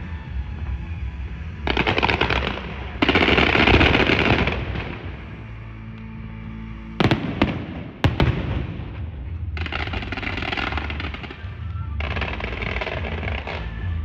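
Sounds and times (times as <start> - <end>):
fireworks crackling: 0.0 - 5.9, 7.0 - 14.0
fireworks bangs: 1.7 - 5.5, 7.0 - 14.0.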